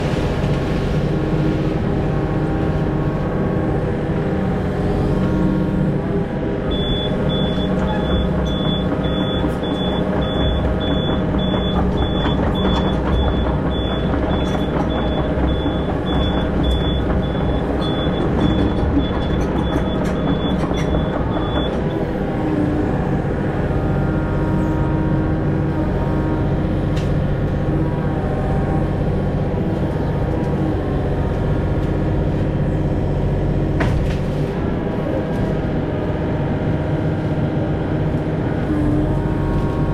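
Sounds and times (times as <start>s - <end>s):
diesel engine running: 0.0s - 39.9s
high-pitched alarm beeps: 6.7s - 21.8s.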